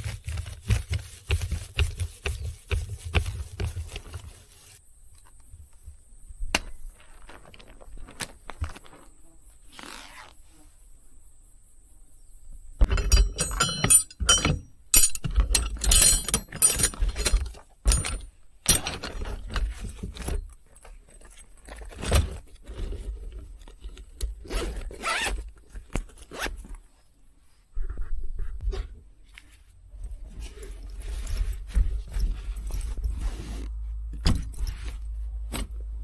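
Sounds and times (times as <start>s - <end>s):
gear rustling and scraping: 0.0s - 4.8s, 12.8s - 26.9s, 29.3s - 36.0s.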